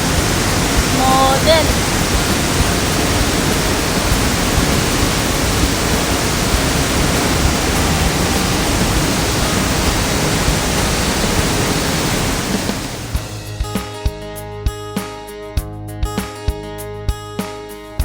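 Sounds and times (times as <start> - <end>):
waterfall rushing: 0.0 - 13.4.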